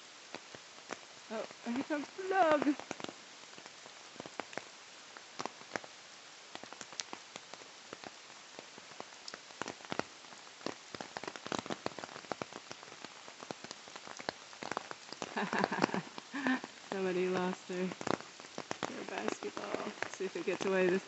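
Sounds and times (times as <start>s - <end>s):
flooded river rushing: 0.7s - 4.6s, 14.0s - 21.0s.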